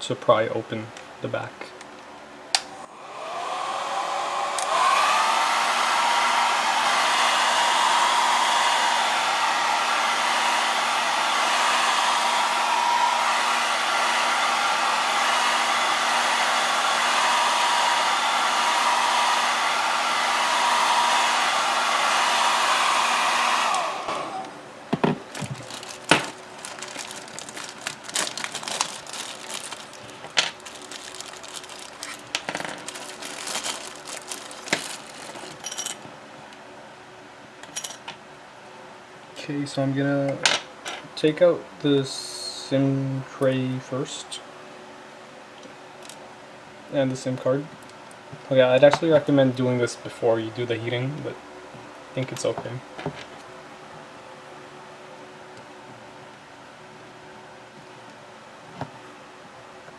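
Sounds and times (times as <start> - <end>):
hair dryer blowing: 2.6 - 24.6, 25.3 - 35.6.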